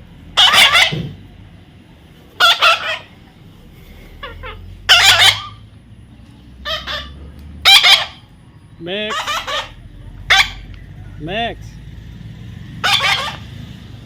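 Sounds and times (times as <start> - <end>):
parrot squawking: 0.4 - 1.0, 2.4 - 3.1, 4.2 - 5.6, 6.6 - 8.3, 9.0 - 10.7, 12.8 - 13.6.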